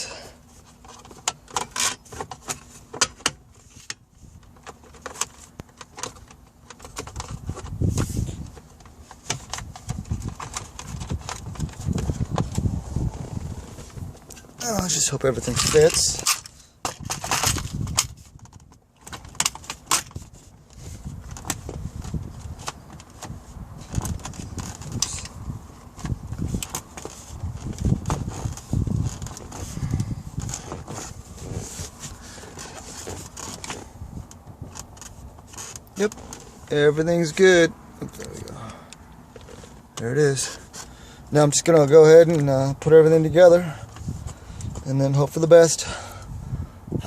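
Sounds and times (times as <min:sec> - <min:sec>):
plastic trim clicking and rattling: 0:00.8 - 0:07.8.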